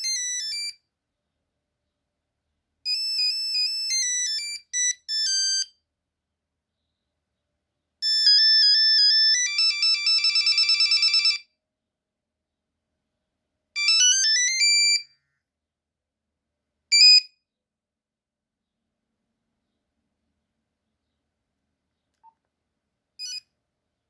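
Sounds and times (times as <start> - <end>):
monophonic phone ringtone beeps: 9.4 - 11.5.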